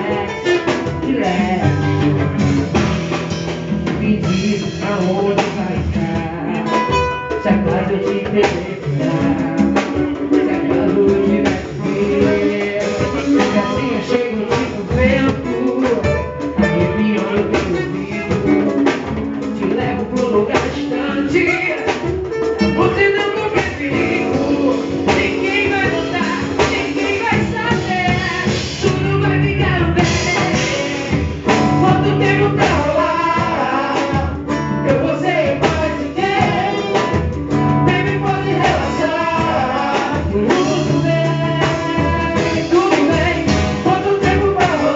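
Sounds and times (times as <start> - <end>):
drum kit: 0.0 - 44.9
guitar: 0.0 - 44.9
person singing: 0.0 - 44.9.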